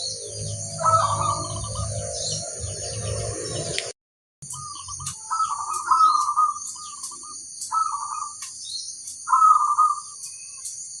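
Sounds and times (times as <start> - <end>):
dove cooing: 0.0 - 3.0, 4.6 - 8.4, 9.3 - 10.2
sharp chirps: 4.4 - 11.0.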